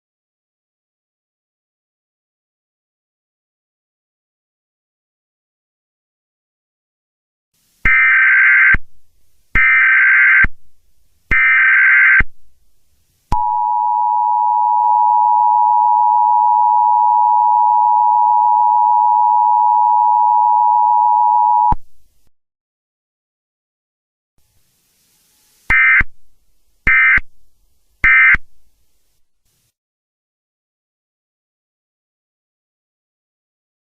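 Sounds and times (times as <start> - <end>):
two-tone attention signal: 13.4 - 21.8
data bursts: 25.7 - 26.1, 26.9 - 27.3, 28.0 - 28.4.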